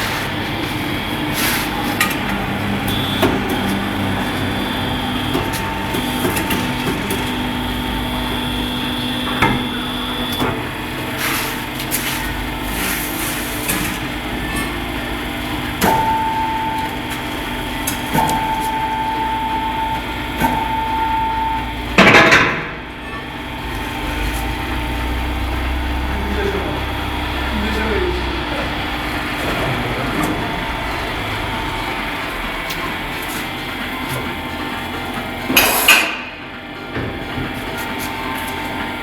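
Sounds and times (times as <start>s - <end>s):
machine whine: 0.0s - 39.0s
loud rush of noise: 24.0s - 34.1s.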